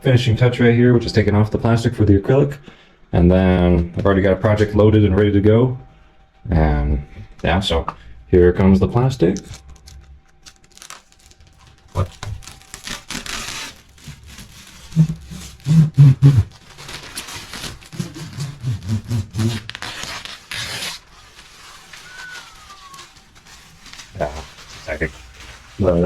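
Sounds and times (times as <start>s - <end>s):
plastic film crackling and tearing: 9.3s - 26.0s
faint falling squeak: 21.2s - 23.8s.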